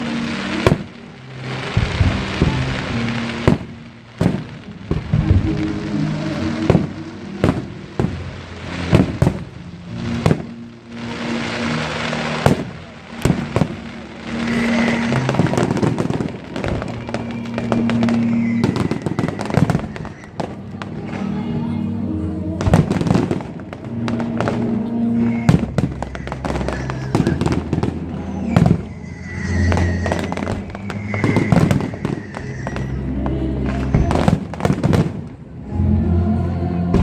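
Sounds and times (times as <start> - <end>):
fireworks bursting with sharp bangs: 0.0 - 35.8
fireworks crackling hiss: 0.0 - 37.0
music with sustained tones: 0.0 - 37.0.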